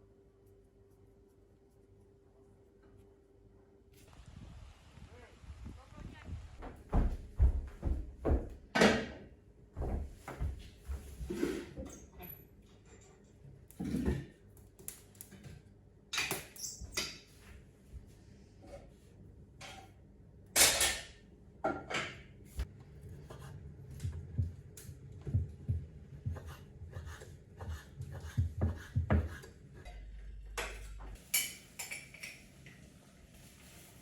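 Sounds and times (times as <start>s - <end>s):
low thumps: 25.2s - 26.5s
dishes and utensils clinking: 29.9s - 32.5s.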